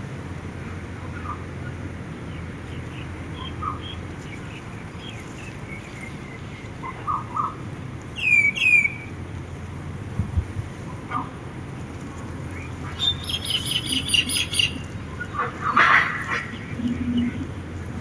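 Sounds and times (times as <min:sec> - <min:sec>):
low wind rumble: 0:00.0 - 0:18.0
birds chirping: 0:00.8 - 0:09.4, 0:10.8 - 0:18.0
loud down-slurred bird calls: 0:08.2 - 0:09.1, 0:12.6 - 0:17.6.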